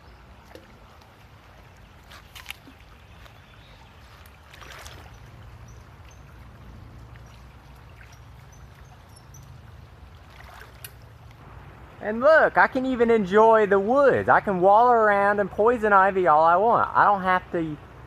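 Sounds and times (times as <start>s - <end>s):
flowing river water: 0.0s - 18.0s
splashy rush of water: 3.8s - 12.6s.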